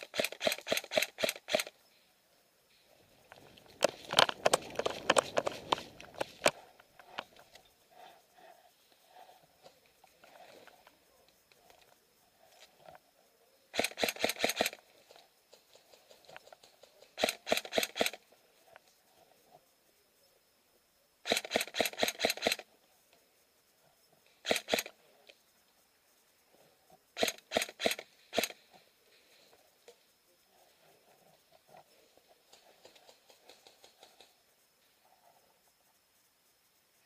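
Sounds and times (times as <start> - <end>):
airsoft gun firing: 0.0 - 1.7, 13.8 - 14.8.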